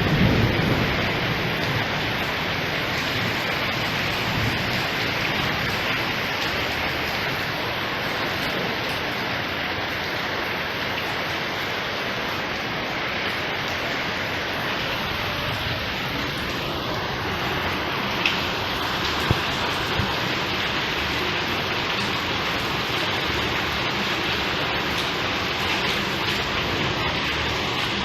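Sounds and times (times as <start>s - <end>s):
low thunder rumble: 0.0s - 7.1s
heavy rain falling: 0.0s - 28.0s.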